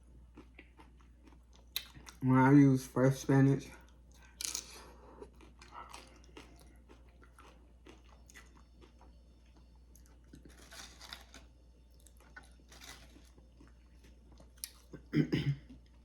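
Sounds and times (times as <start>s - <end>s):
chewing crunchy chips: 0.0s - 2.3s, 3.8s - 16.0s.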